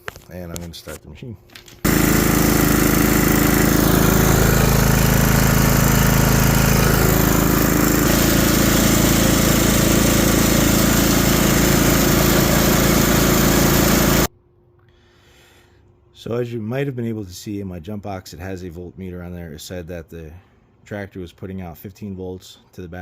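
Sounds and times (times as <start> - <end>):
lawn mower engine running: 1.8 - 14.3.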